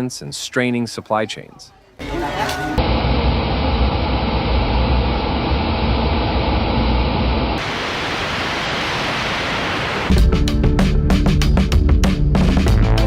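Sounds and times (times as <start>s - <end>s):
floodwater rushing: 7.6s - 10.1s.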